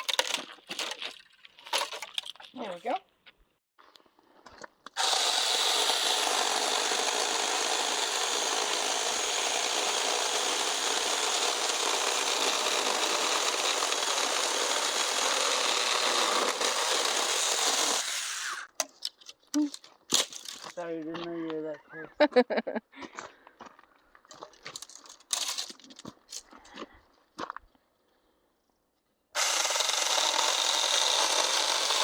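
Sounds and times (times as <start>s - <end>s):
electric chainsaw cutting wood: 4.9s - 18.8s, 29.4s - 32.0s.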